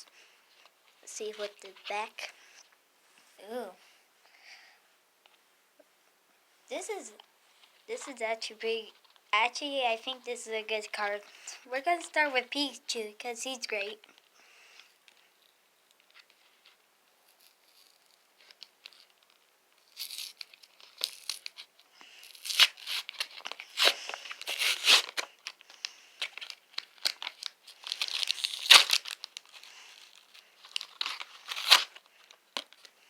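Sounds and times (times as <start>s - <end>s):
packaging torn and crinkled: 17.4s - 32.9s.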